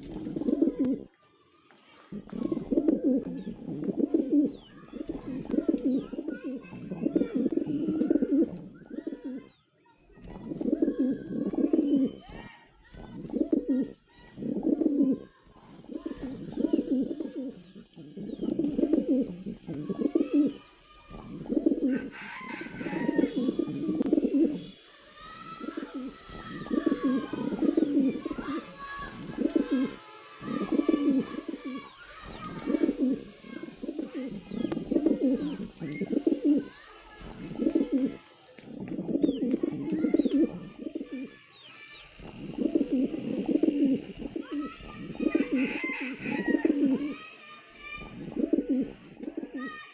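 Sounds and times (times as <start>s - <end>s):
pigeons cooing: 0.0s - 1.1s, 2.1s - 9.6s, 10.2s - 49.8s
small birds chirping: 0.0s - 49.9s.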